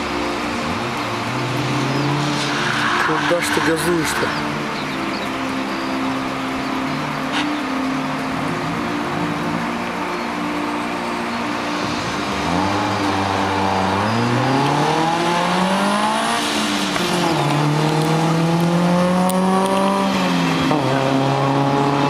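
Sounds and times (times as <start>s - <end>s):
car engine revving hard: 11.8s - 22.0s.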